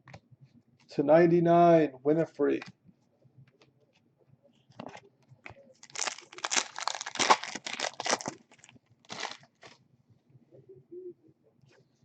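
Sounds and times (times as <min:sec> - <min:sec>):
wrapper tearing and crinkling: 0:05.8 - 0:09.8.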